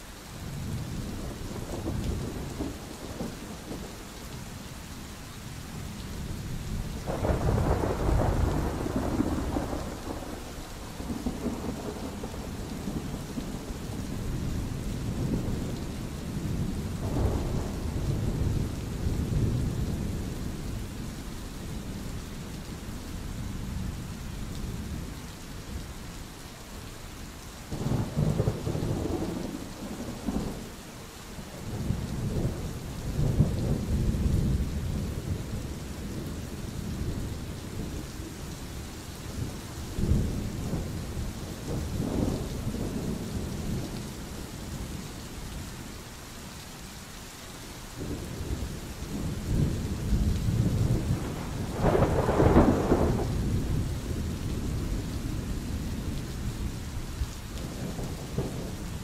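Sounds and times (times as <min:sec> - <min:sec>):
rain hiss: 0:00.0 - 0:59.0
thunder rolling: 0:48.0 - 0:55.0.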